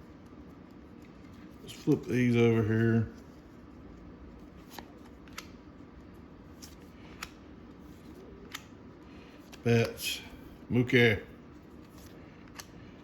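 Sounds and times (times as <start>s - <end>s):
cards being flipped: 4.4s - 5.6s, 6.5s - 10.0s, 11.6s - 12.9s.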